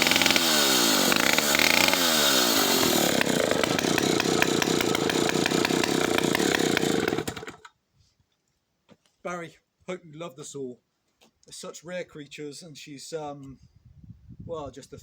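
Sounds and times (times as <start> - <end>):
chainsaw engine revving and idling: 0.0 - 7.7.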